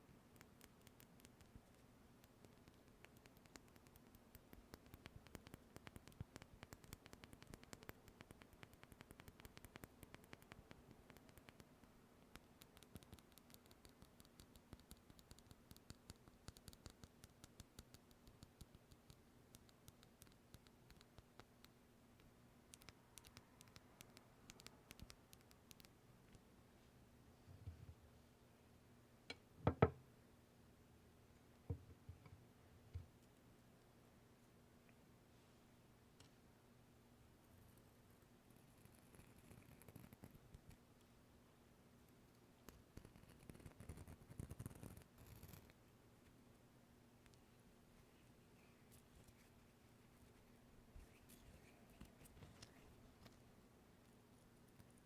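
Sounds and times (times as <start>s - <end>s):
faint steady hum: 0.0s - 55.0s
tapping and scratching on microphone: 38.6s - 40.8s, 42.7s - 45.8s, 48.0s - 53.4s.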